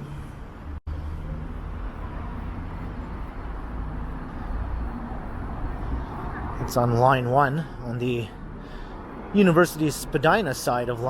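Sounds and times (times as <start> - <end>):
city street traffic rumble: 0.0 - 11.0.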